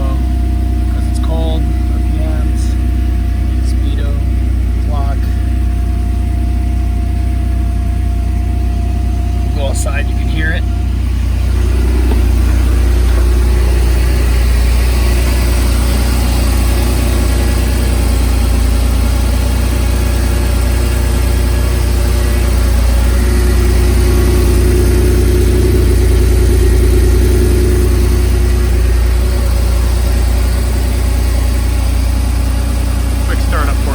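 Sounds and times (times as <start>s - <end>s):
car engine idling: 0.0s - 33.9s.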